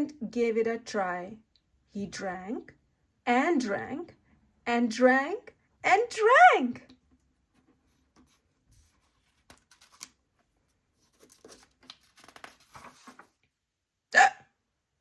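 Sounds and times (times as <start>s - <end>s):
paper page rustling: 7.6s - 13.4s
person voicing a hiccup: 14.1s - 14.6s.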